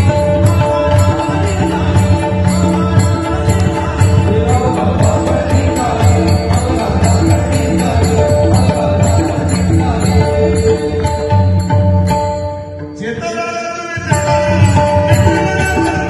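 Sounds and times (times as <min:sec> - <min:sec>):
drum: 0:00.0 - 0:12.2
hand cymbals struck: 0:00.0 - 0:12.8.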